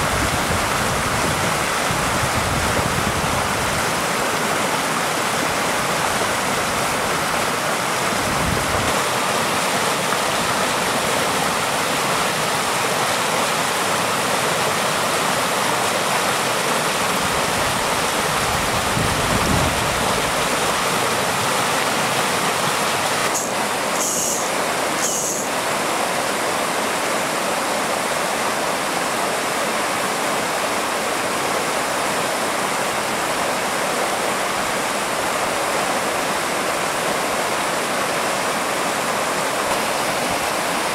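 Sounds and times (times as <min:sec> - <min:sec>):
brief high-pitched sounds: 0:23.3 - 0:25.5.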